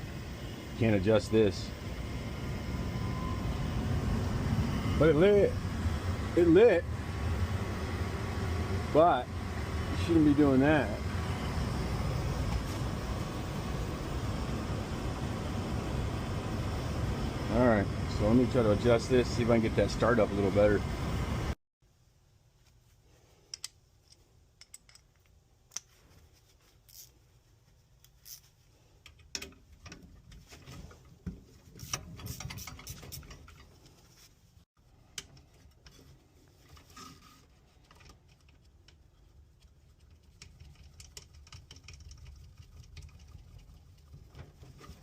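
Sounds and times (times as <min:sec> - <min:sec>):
low steady rumble: 0:00.0 - 0:22.9
tools clicking and scraping: 0:23.4 - 0:26.0, 0:26.8 - 0:27.2, 0:28.0 - 0:34.0.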